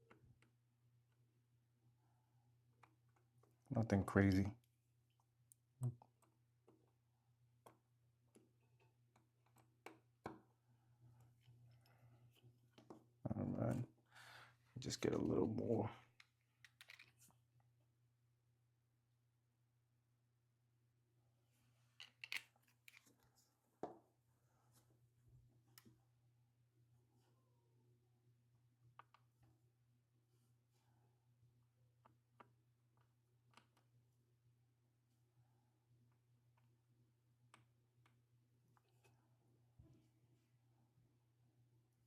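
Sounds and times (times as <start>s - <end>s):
clicks and taps of small tools: 22.0s - 23.1s
small clicks and taps: 32.0s - 33.9s.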